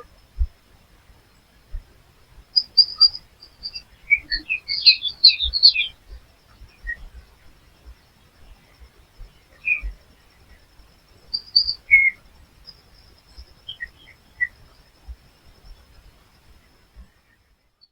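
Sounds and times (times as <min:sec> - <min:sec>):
songbirds chirping: 0:00.0 - 0:17.9.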